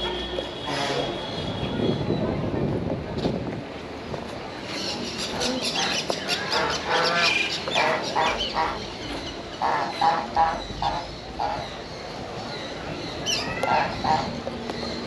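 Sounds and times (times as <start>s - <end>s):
birds calling: 4.7s - 15.0s.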